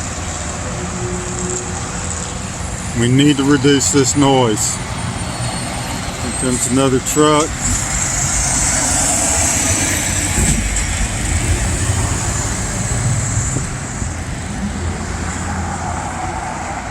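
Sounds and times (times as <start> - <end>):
heavy truck passing: 0.0 - 16.9.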